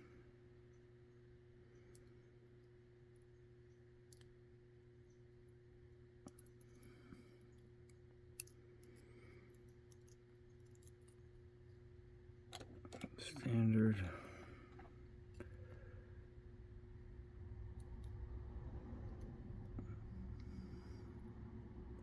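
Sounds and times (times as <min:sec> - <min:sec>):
faint steady hum: 0:00.0 - 0:22.0
tweezers and lock pins clicking: 0:07.8 - 0:09.0.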